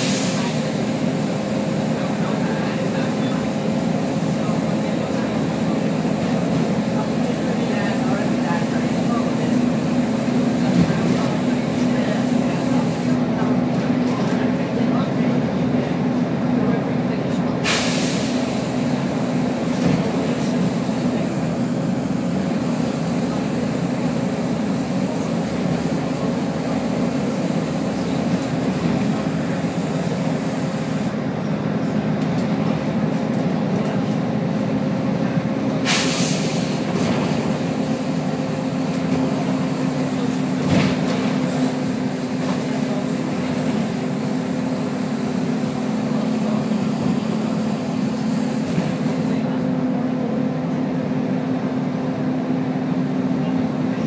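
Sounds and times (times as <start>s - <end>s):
bus engine drone: 0.0s - 54.0s
air hiss: 17.6s - 18.7s, 35.9s - 36.8s.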